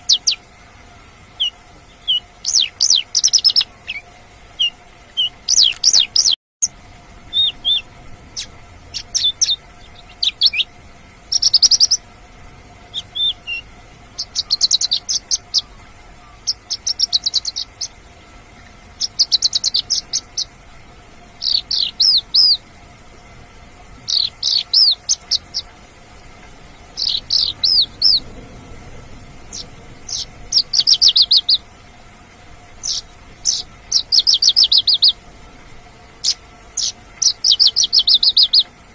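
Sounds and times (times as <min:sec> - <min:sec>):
lark singing high chirps: 0:00.0 - 0:00.4, 0:01.3 - 0:12.1, 0:12.8 - 0:18.1, 0:18.9 - 0:20.6, 0:21.4 - 0:22.6, 0:24.0 - 0:25.8, 0:26.6 - 0:28.4, 0:29.4 - 0:31.7, 0:32.7 - 0:35.2, 0:36.2 - 0:38.8.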